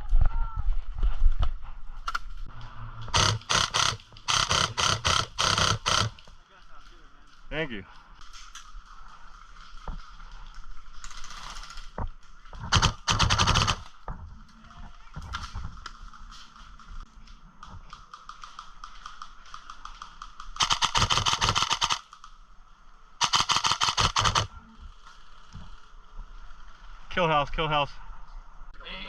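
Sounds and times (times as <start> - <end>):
airsoft gun full-auto bursts: 3.1 - 6.2, 12.7 - 13.9, 20.6 - 22.0, 23.2 - 24.5.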